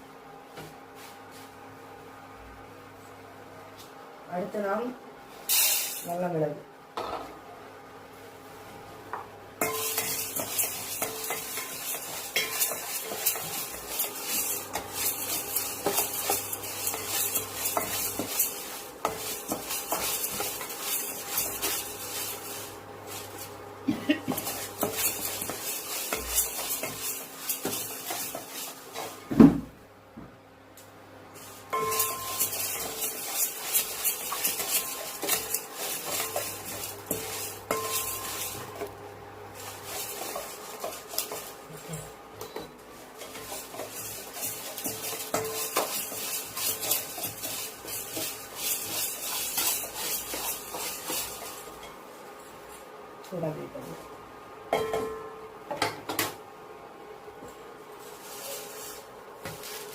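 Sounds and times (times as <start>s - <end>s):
peppercorns scraping and rattling in pan: 5.5s - 6.2s, 9.6s - 29.3s, 31.3s - 42.2s, 42.8s - 52.8s, 58.0s - 59.9s.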